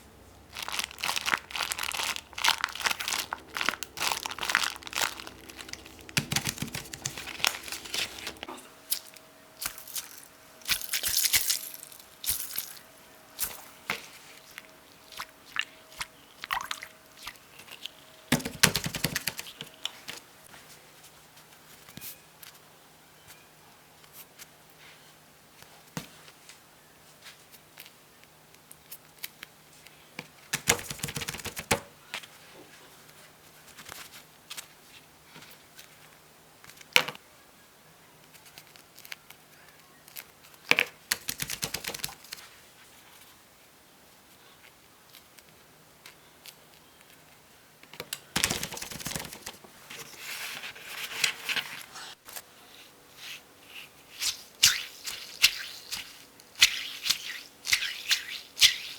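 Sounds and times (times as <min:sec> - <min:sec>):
rapid clicking and rustling: 0:02.5 - 0:08.5, 0:18.3 - 0:19.9, 0:30.6 - 0:31.9, 0:41.1 - 0:42.5, 0:48.1 - 0:51.7.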